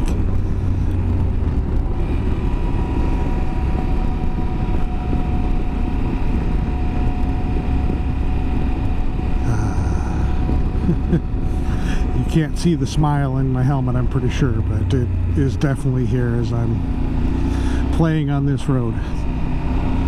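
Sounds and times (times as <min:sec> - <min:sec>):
motorcycle engine running: 0:00.0 - 0:20.0
wind rushing over microphone: 0:00.0 - 0:20.0.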